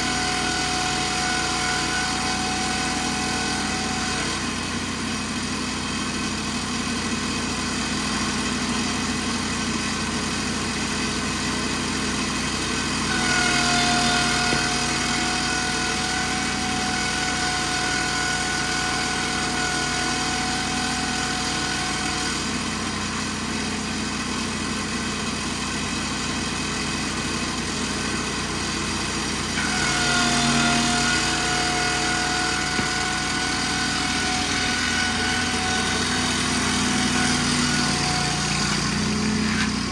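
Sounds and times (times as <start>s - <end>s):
small engine running: 0.0s - 39.9s
high whine: 27.4s - 39.9s.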